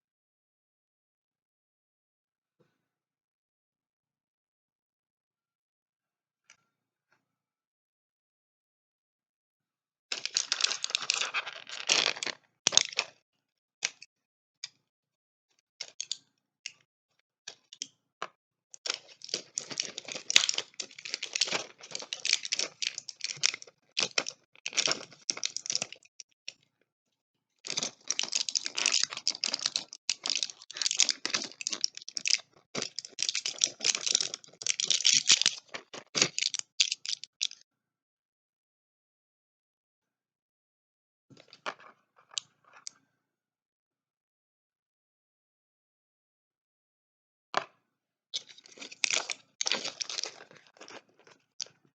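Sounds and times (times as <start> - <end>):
packaging crinkling and clicking: 10.1 - 13.1, 18.8 - 26.1, 27.7 - 37.6, 48.4 - 51.8.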